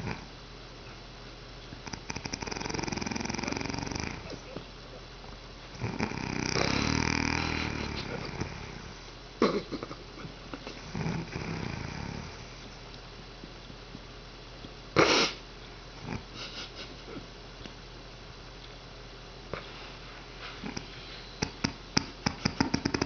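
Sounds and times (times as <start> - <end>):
person snoring heavily: 0.0 - 0.3, 1.8 - 4.4, 5.8 - 9.7, 10.7 - 12.6.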